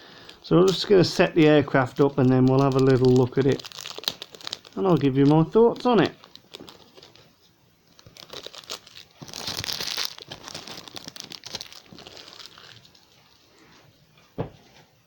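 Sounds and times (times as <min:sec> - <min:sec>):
plastic packaging crinkling: 0:00.0 - 0:13.5.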